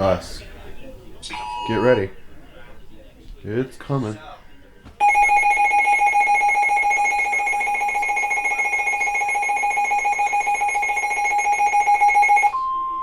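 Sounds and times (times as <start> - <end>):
shrill pulsing alert alarm: 5.0 - 12.7.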